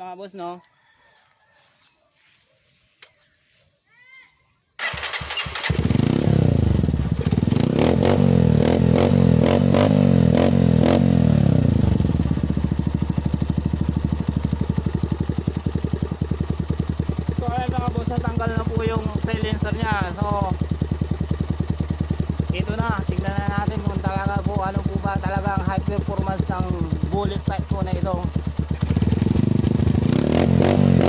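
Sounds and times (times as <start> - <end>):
motorcycle engine starting and idling: 4.8 - 31.0.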